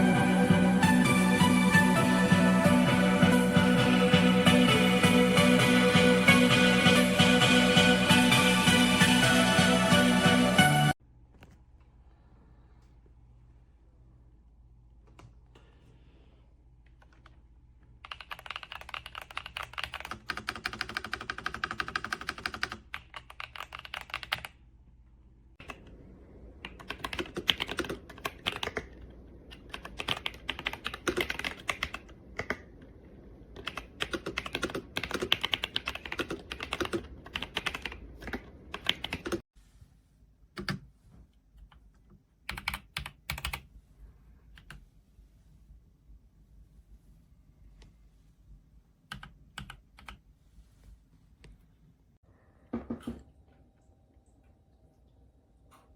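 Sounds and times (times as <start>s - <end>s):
mechanical keyboard typing: 18.0s - 24.6s, 26.6s - 32.7s, 33.6s - 39.4s, 42.5s - 43.6s.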